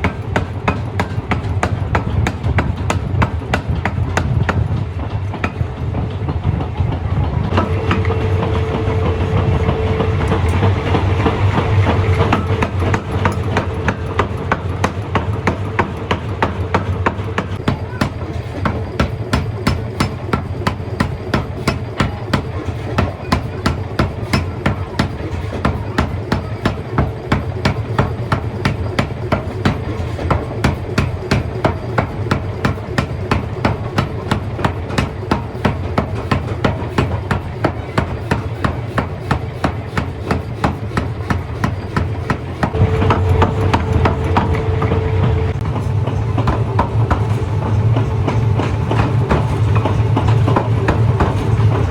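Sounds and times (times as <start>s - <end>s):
machine hum: 7.5s - 18.0s, 42.7s - 51.9s
forging hammer striking metal: 7.5s - 51.9s.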